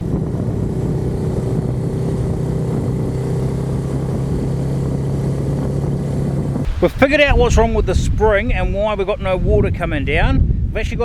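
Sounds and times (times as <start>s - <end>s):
vehicle engine running steadily: 0.0s - 7.0s.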